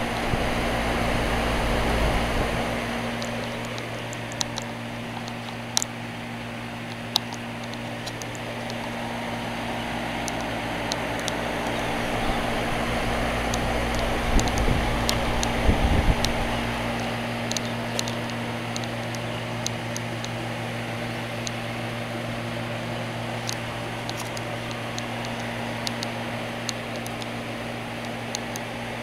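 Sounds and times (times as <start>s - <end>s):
fan whooshing: 0.0s - 29.0s
steady hum: 0.0s - 29.0s
faint sharp ticks: 3.1s - 6.0s, 6.8s - 9.0s, 10.1s - 12.8s, 13.4s - 20.4s, 23.4s - 27.4s, 28.0s - 28.7s.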